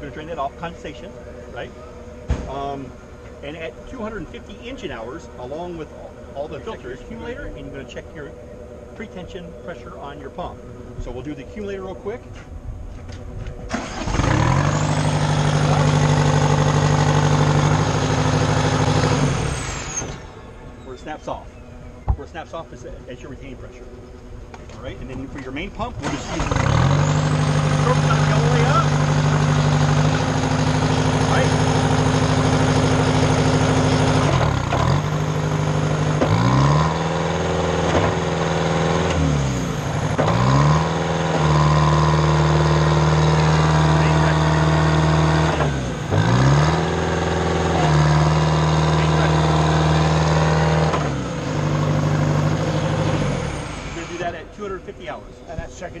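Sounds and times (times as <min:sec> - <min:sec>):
high hydraulic whine: 0:13.6 - 0:37.0, 0:50.8 - 0:54.8
pump engine running hard: 0:13.7 - 0:20.4, 0:26.0 - 0:54.4.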